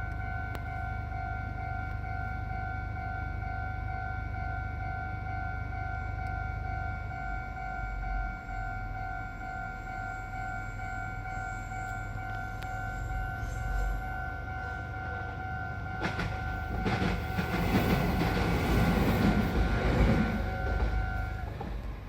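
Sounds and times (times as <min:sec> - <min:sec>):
level crossing warning bell: 0:00.0 - 0:22.0
train wheels rumbling and clacking: 0:09.8 - 0:22.0.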